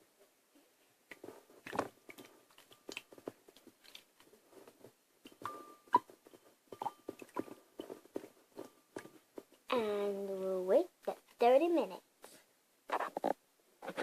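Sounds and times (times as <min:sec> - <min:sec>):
hands squishing dough in water: 0:00.9 - 0:09.7.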